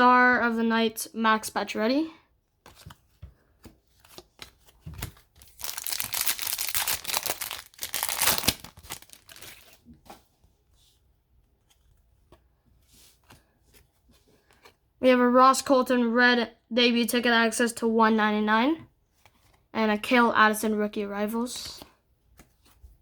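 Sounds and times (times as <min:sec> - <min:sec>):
foil wrapper tearing and crinkling: 0:05.4 - 0:09.8.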